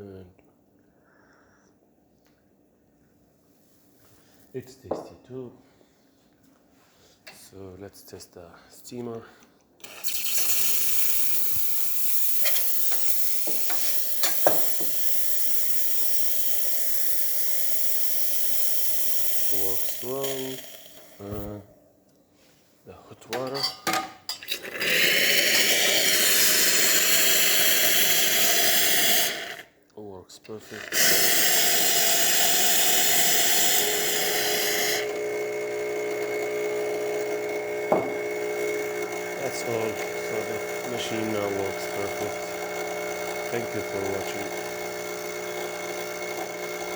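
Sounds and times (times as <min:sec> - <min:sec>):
steam wand hissing: 0:09.8 - 0:21.5, 0:24.7 - 0:29.7, 0:30.7 - 0:35.4.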